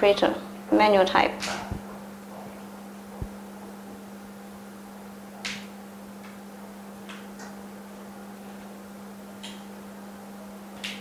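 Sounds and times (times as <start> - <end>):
machine hum: 1.3 - 5.3.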